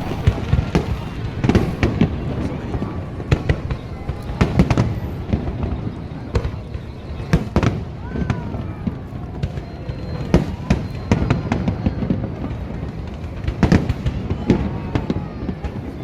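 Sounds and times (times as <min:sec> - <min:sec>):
firework shells bursting: 0:00.0 - 0:07.9
faint falling whistle: 0:00.0 - 0:12.6.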